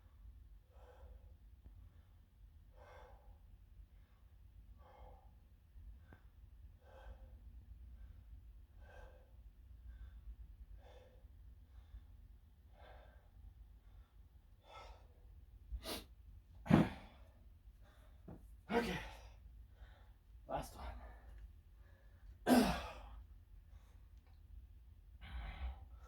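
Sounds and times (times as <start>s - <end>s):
person breathing hard: 6.8s - 8.2s.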